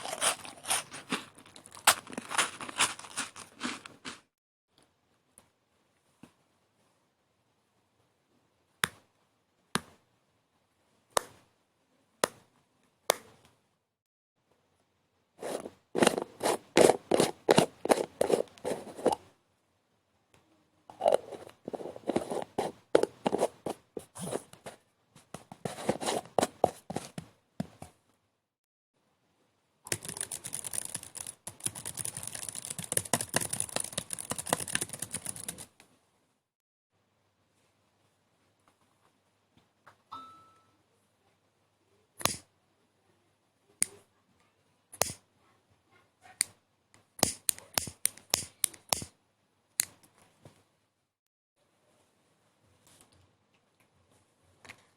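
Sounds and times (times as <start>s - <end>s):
rapid scratching and scraping: 15.4s - 19.2s, 29.9s - 35.7s.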